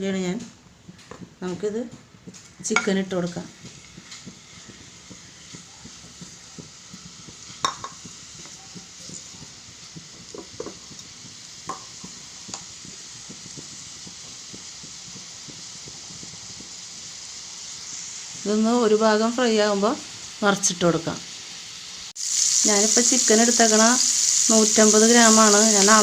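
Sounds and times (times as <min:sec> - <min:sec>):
chicken sizzling in oil: 0:01.2 - 0:26.0.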